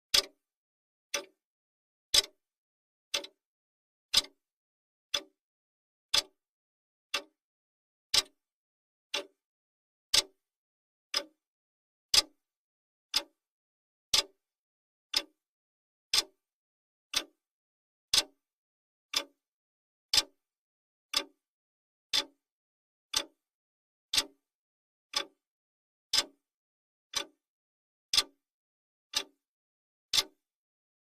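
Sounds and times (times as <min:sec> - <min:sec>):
clock ticking: 0:03.1 - 0:03.4, 0:04.1 - 0:04.4.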